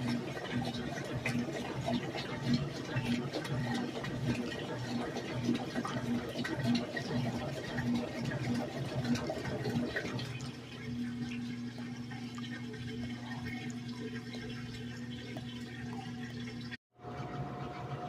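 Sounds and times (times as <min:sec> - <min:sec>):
water sloshing: 0:00.0 - 0:16.8
washing machine motor hum: 0:00.0 - 0:18.0.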